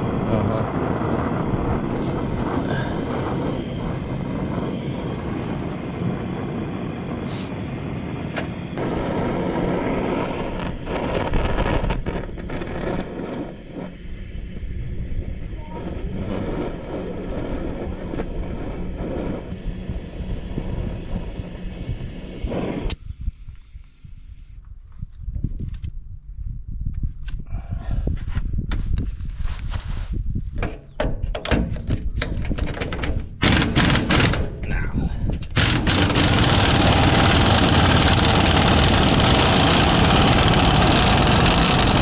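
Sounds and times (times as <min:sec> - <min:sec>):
gas torch flame roaring: 0:00.0 - 0:23.0, 0:35.5 - 0:42.0.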